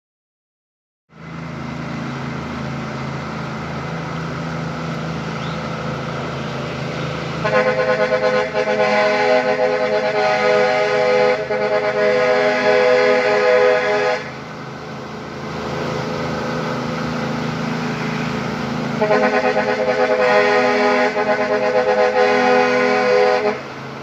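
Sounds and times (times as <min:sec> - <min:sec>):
diesel truck engine running: 0:01.1 - 0:24.0
air horn chords: 0:07.4 - 0:14.4, 0:19.0 - 0:23.8.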